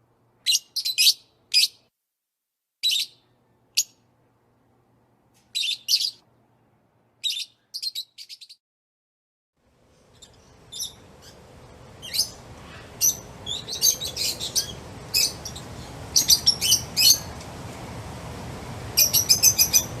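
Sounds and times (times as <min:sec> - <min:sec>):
birds chirping: 0:05.5 - 0:06.2, 0:07.2 - 0:08.6, 0:09.9 - 0:20.0
low background ambience: 0:09.6 - 0:20.0.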